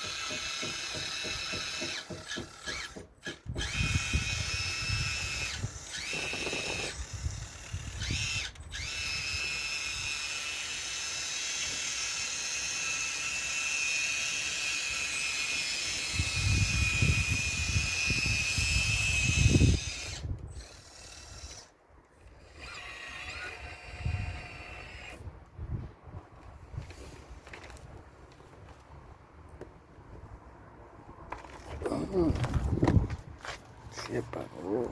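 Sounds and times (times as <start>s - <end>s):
hydraulic pump whining: 0.0s - 25.3s.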